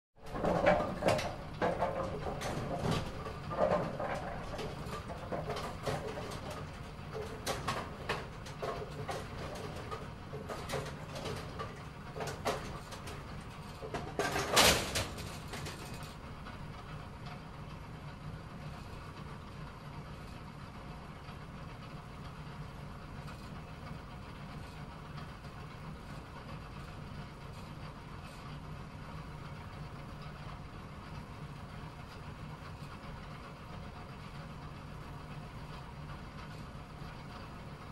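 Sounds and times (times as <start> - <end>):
bowling pins clattering: 0.2 - 15.8
low machine hum: 0.2 - 37.9.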